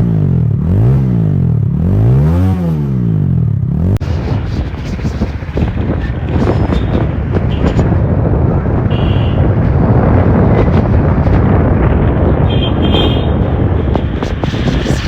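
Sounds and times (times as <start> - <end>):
motorbike engine and road noise: 0.0 - 15.0
wind rushing over microphone: 3.9 - 15.0.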